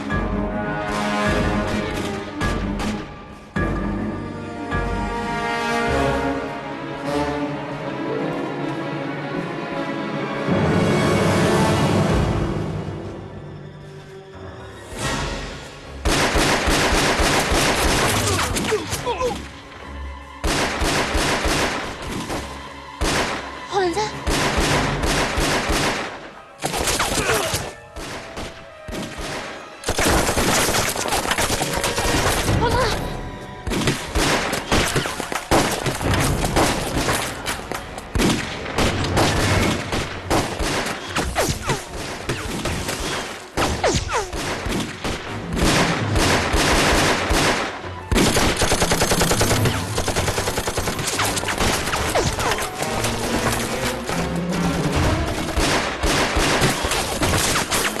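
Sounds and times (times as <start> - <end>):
rapid rifle shots: 16.0 - 18.6, 20.4 - 22.4, 24.2 - 27.3, 28.0 - 32.5, 33.7 - 37.4, 38.2 - 53.3, 54.8 - 58.0
machine-gun bursts: 48.3 - 52.1.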